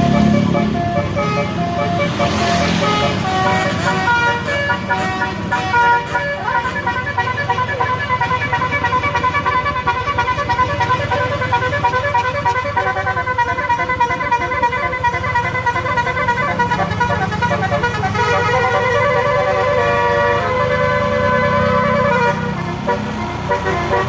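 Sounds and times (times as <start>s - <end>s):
bus air horn playing a tune: 0.0s - 24.0s
bus engine running: 0.0s - 24.0s.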